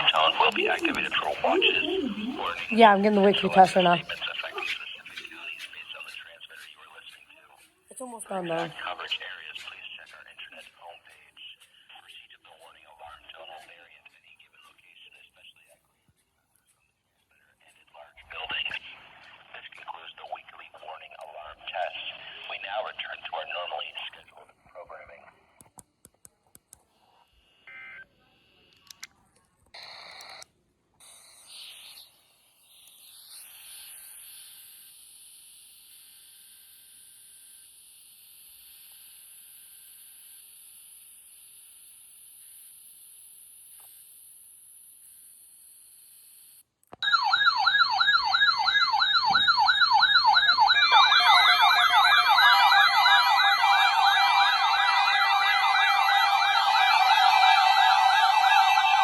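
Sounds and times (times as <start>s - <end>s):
electronic warbling siren: 0.0s - 5.6s, 8.1s - 8.9s, 47.0s - 59.0s
radio clicks: 0.0s - 5.8s
radio static hiss: 0.0s - 7.3s, 7.9s - 15.6s, 18.0s - 25.6s.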